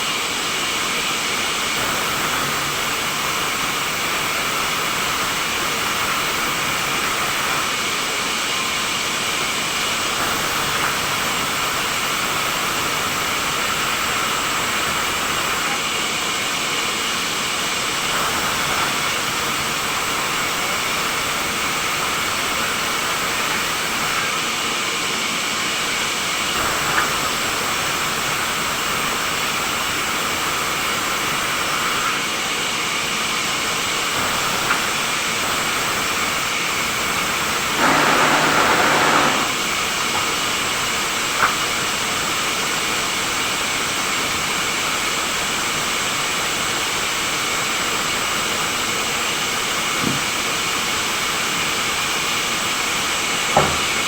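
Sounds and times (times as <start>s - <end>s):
sawmill saw running: 0.0s - 54.0s.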